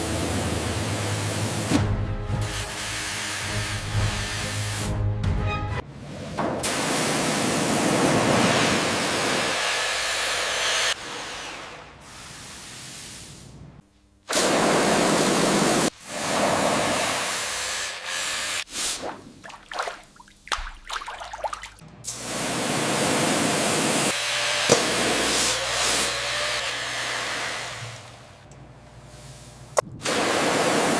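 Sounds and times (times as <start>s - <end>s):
water spray hissing on metal: 2.4s - 4.9s, 6.6s - 9.7s, 12.0s - 13.6s, 14.3s - 19.0s, 29.1s - 30.9s.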